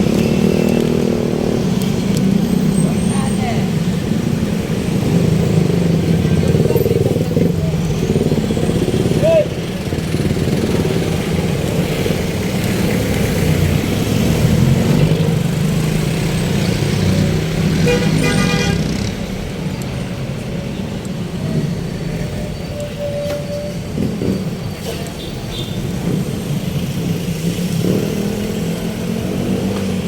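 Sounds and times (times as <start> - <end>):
traffic rumble: 0.0 - 30.0
car horn: 17.8 - 18.9.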